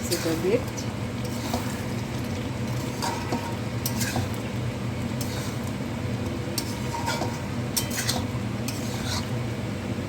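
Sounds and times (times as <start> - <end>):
spoon scraping pan: 0.0 - 1.9, 2.7 - 4.4, 5.2 - 5.8, 6.6 - 9.4
spoon stirring thick gravy: 0.0 - 5.8, 6.5 - 9.4.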